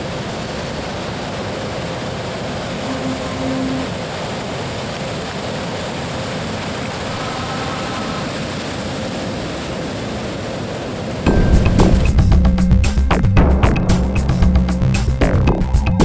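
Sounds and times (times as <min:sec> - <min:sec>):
ocean surf breaking: 0:00.0 - 0:12.3.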